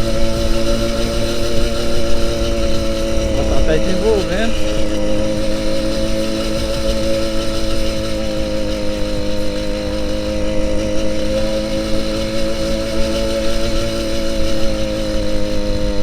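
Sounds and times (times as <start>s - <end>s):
two-stroke engine running high-pitched: 0.0s - 16.0s.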